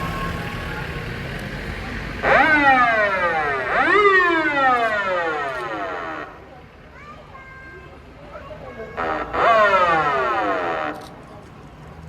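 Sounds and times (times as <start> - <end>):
low vehicle rumble: 0.0 - 12.0
electronic siren wails: 2.2 - 6.3.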